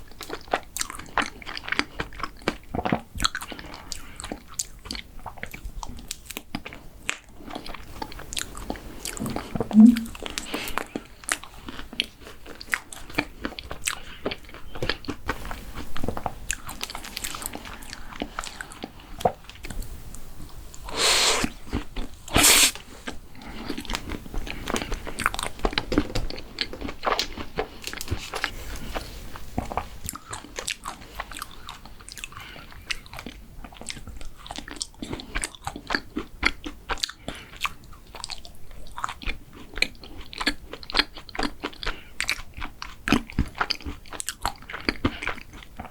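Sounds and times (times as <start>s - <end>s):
crunchy bites and chewing: 10.2s - 19.8s, 21.4s - 45.9s.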